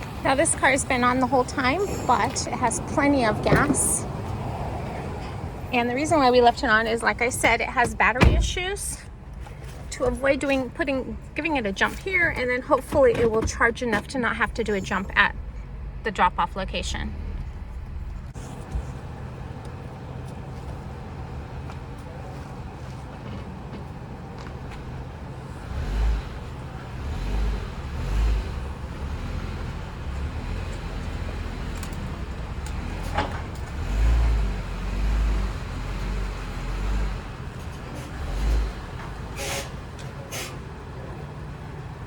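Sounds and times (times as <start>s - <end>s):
vehicle engine idling: 14.3s - 33.7s.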